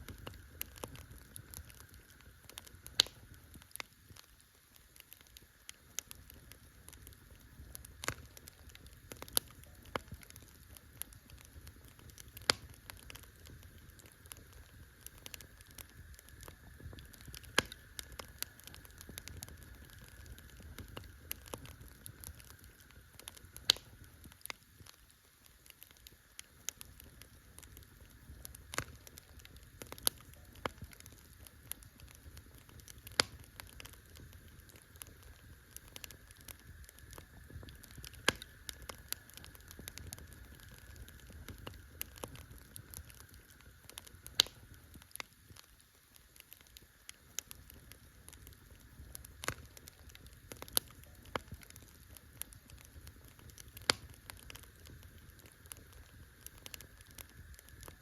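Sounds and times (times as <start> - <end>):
campfire crackling: 0.0 - 58.0
wood popping in fire: 0.0 - 58.0.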